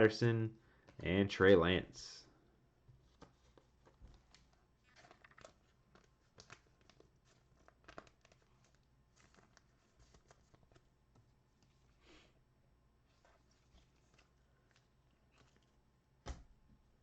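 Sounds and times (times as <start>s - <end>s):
cards and wrappers rustling: 3.0s - 11.9s, 13.1s - 15.8s.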